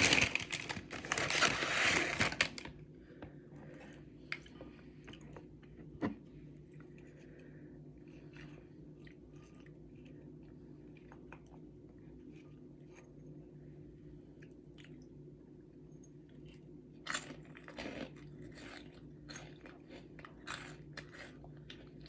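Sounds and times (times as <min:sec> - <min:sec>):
person chewing noodles: 0:06.7 - 0:13.4, 0:14.2 - 0:15.1, 0:16.2 - 0:22.0.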